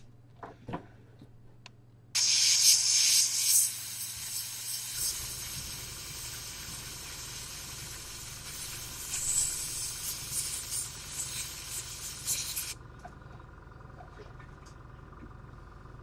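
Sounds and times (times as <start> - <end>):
ultrasonic cleaner crackling hiss: 2.2 - 12.8.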